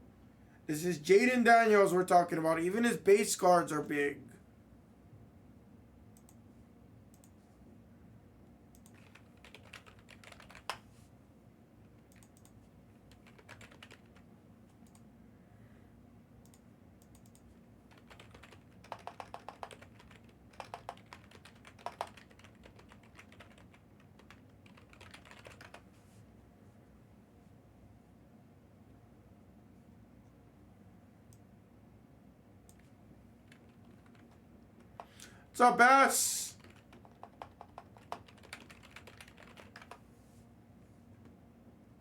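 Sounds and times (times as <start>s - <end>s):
faint typing on keyboard: 6.1s - 7.5s, 8.4s - 11.1s, 11.8s - 15.1s, 16.4s - 26.2s, 32.6s - 35.5s, 36.5s - 40.2s.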